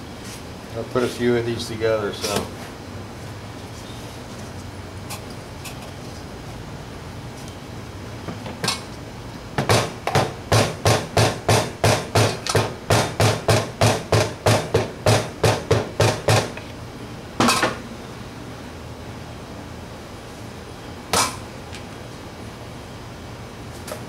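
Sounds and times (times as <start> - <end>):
hammer tapping on engine parts: 9.6 - 16.6.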